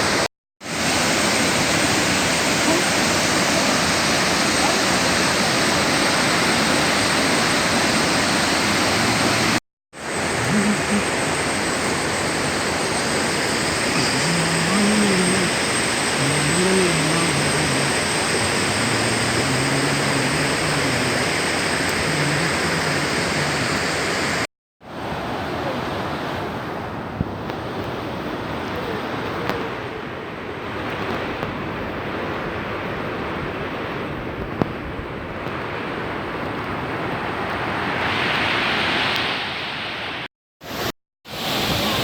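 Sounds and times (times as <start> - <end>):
waterfall rushing: 0.0 - 24.5
faint voices: 8.7 - 11.4, 12.6 - 24.5.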